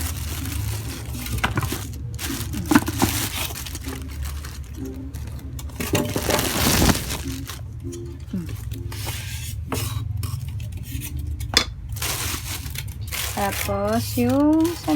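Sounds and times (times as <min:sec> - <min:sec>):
plastic packaging crinkling: 0:00.0 - 0:07.7, 0:12.0 - 0:14.9.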